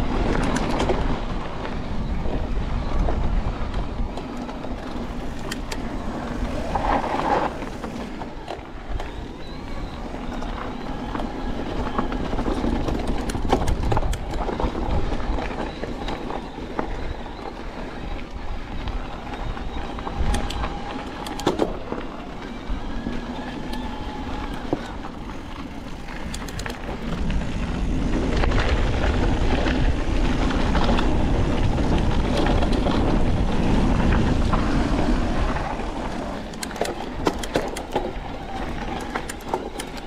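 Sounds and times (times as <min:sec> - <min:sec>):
bike rattles and knocks: 0:00.0 - 0:40.0
tyres rolling over dirt: 0:00.0 - 0:40.0
wind rush on microphone: 0:00.0 - 0:40.0.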